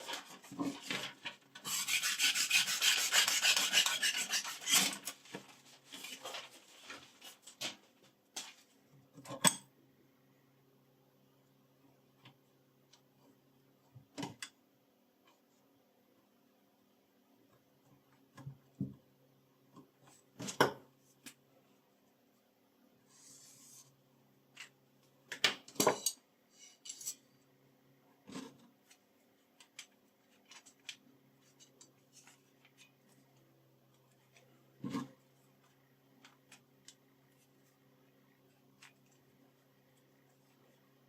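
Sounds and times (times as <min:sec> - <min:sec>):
faint steady hum: 0:00.0 - 0:41.0
knife scraping stroke: 0:01.6 - 0:05.1.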